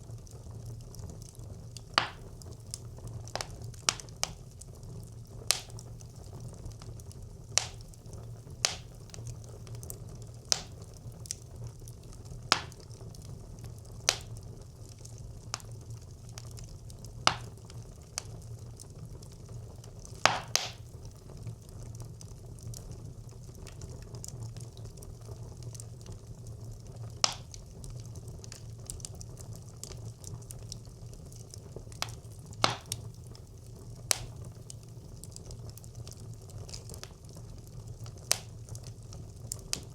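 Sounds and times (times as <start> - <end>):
low rumble of flame: 0.0 - 39.9
wood fire crackling and popping: 0.0 - 39.9.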